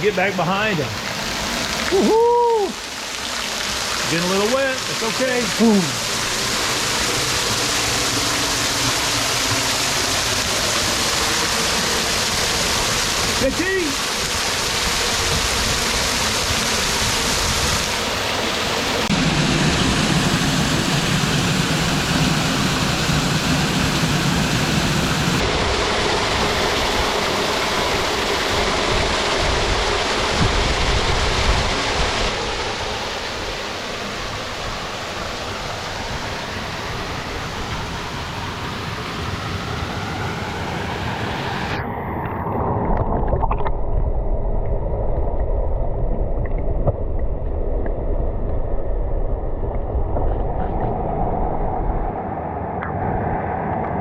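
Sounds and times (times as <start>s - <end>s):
small waterfall rushing: 0.0s - 41.8s.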